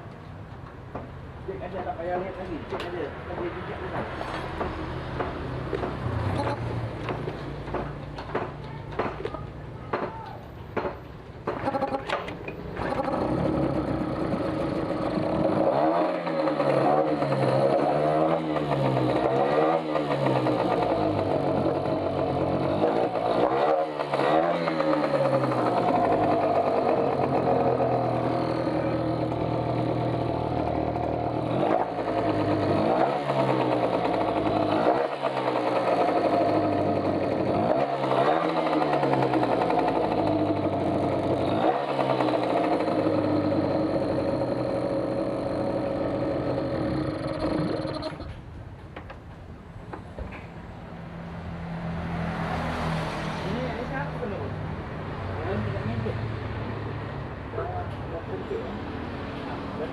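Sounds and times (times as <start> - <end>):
outboard motor revving: 11.6 - 12.1, 12.7 - 48.3.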